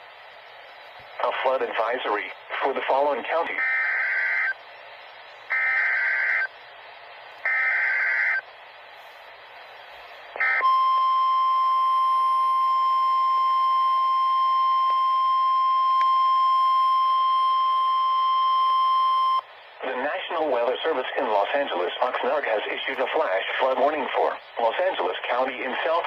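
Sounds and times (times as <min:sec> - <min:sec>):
screeching digital data bursts: 0:05.5 - 0:06.5.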